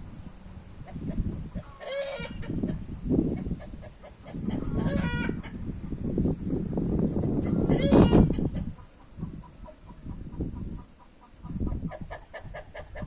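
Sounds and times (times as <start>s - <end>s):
wind buffeting microphone: 0.0s - 13.0s
chicken calling: 0.8s - 5.6s, 7.4s - 13.0s.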